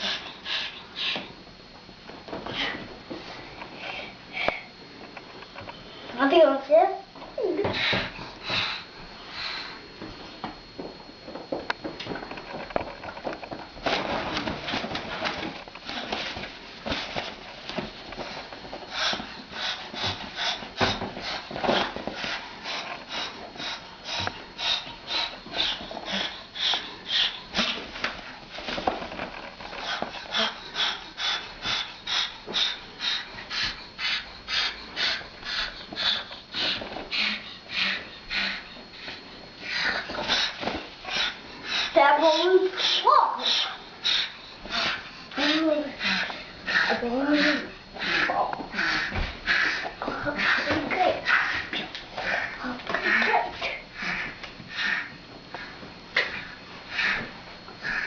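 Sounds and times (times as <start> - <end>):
pet animal hissing breaths: 0.0 - 1.4, 7.6 - 9.9, 18.1 - 29.0, 29.6 - 58.0.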